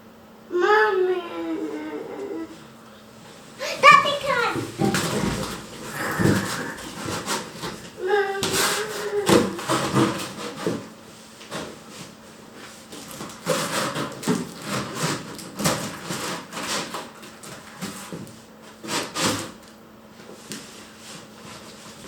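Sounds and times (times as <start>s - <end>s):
knocks and clatter of hard objects: 3.9s - 10.9s.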